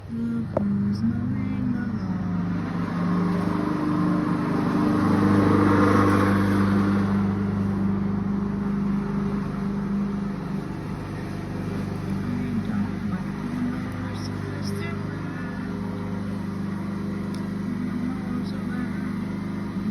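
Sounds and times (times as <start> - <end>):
lawn mower engine running: 0.0 - 19.9.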